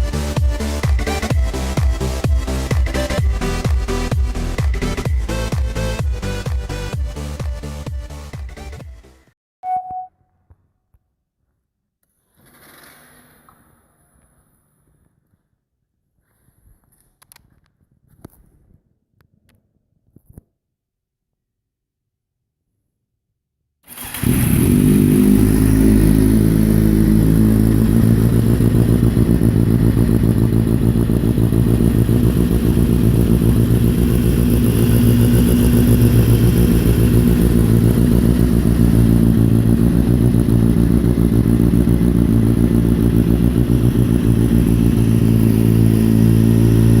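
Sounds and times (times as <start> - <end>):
motorcycle engine idling: 23.9 - 47.0.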